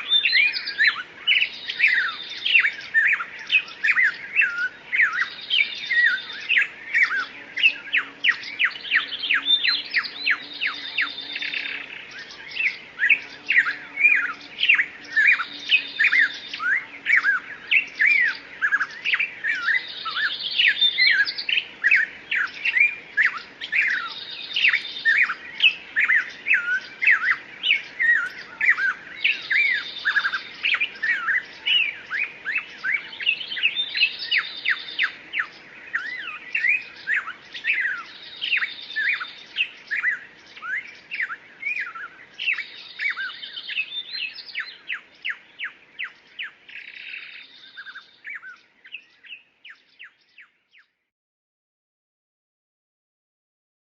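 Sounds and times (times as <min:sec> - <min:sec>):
songbirds chirping and whistling: 0:00.0 - 0:51.1
buzzy bird trill: 0:04.4 - 0:31.6.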